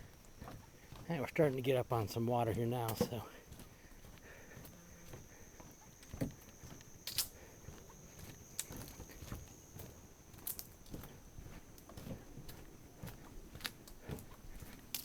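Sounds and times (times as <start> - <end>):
footsteps on a trail: 0.0 - 15.0.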